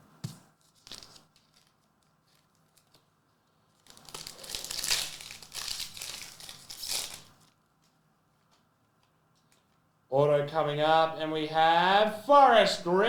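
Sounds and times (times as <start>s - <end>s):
foil wrapper tearing and crinkling: 0.6s - 7.6s.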